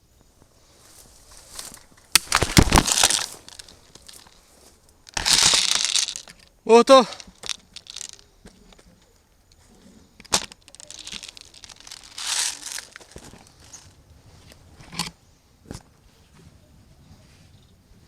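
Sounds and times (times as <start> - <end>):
rustling and crunching: 0.0 - 16.6.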